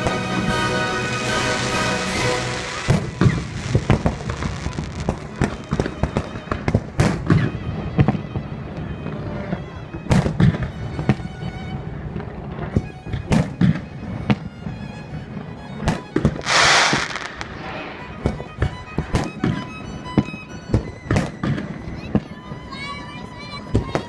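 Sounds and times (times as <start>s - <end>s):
music playing: 0.0s - 4.7s
fireworks bursting with sharp bangs: 0.0s - 8.7s, 10.1s - 11.3s, 15.8s - 22.3s
loud hissing burst: 16.4s - 18.6s.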